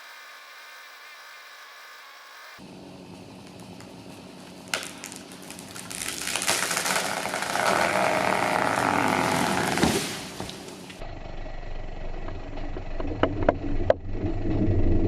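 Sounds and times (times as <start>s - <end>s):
wood cracking: 3.4s - 11.0s
rush of falling tree: 4.6s - 11.0s
tree crashing down: 4.7s - 11.0s.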